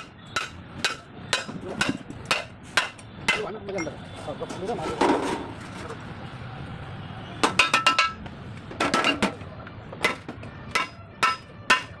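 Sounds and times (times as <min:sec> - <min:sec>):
hammer striking metal: 0:00.0 - 0:03.9, 0:10.0 - 0:12.0.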